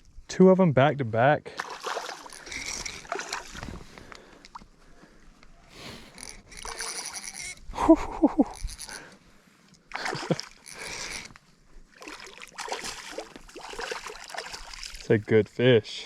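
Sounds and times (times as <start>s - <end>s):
fish splashing in water: 1.6s - 3.7s, 11.9s - 15.0s.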